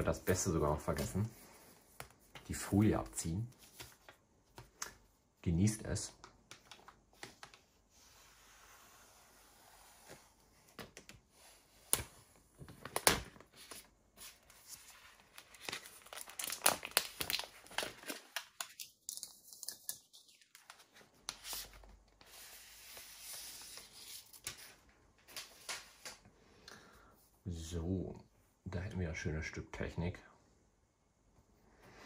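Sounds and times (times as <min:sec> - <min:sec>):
plastic film crackling: 0:15.3 - 0:19.8.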